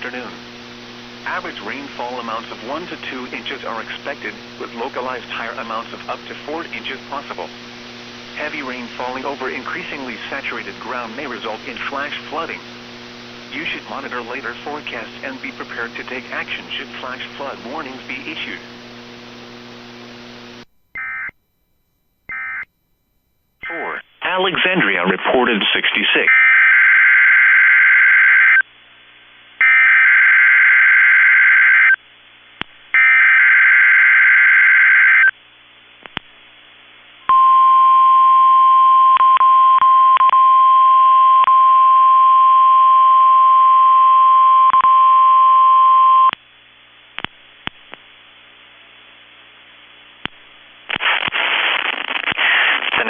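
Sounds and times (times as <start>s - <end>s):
faint radio hiss with clicks: 32.6s - 32.9s, 35.9s - 37.1s, 46.3s - 53.0s.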